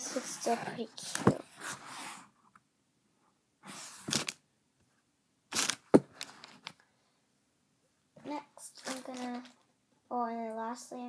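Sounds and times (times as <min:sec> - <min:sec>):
toys rustling: 0:00.0 - 0:02.2, 0:03.7 - 0:04.4, 0:05.5 - 0:06.8, 0:08.2 - 0:09.7
sharp clicks of toys: 0:05.5 - 0:06.4.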